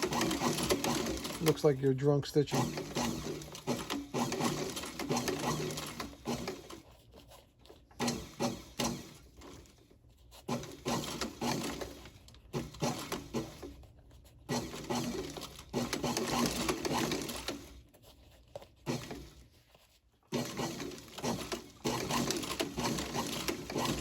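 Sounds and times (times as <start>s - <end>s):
sewing machine stitching leather: 0.0s - 24.0s.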